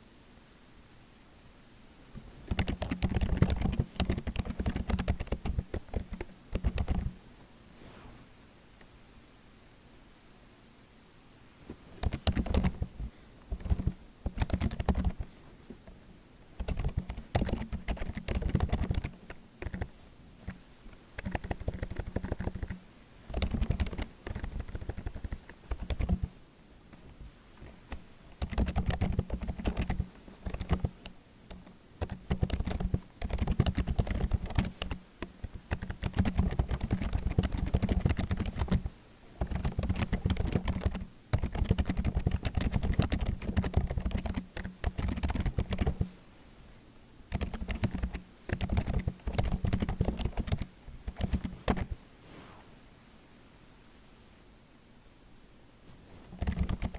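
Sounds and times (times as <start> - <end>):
keyboard typing: 2.4 - 7.2, 11.9 - 15.3, 16.6 - 20.6, 21.2 - 26.3, 27.6 - 46.1, 47.3 - 52.0, 56.2 - 56.9.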